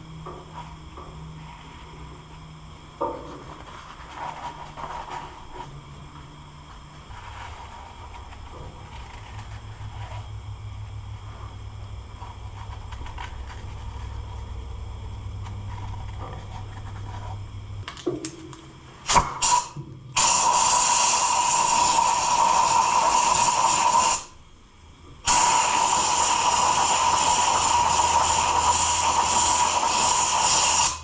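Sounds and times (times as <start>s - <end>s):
low steady hum: 0.0s - 23.6s, 24.2s - 25.3s
aerosol can spraying: 19.1s - 24.3s, 25.3s - 31.0s.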